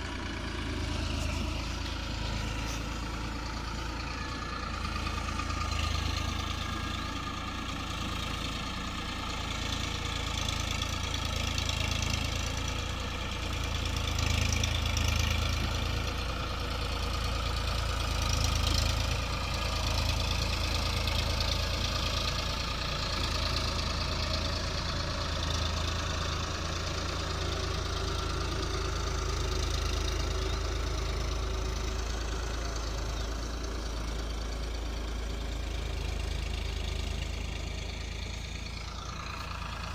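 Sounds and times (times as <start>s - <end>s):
heavy machinery diesel engine: 0.0s - 39.9s.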